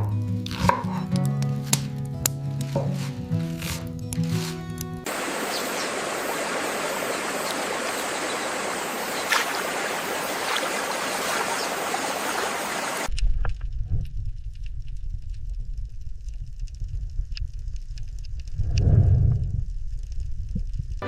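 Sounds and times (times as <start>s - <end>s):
stream water rushing: 5.1s - 13.1s.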